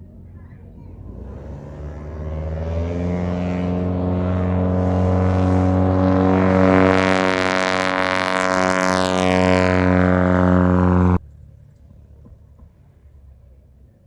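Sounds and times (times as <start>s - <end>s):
light airplane engine droning: 0.0s - 14.0s.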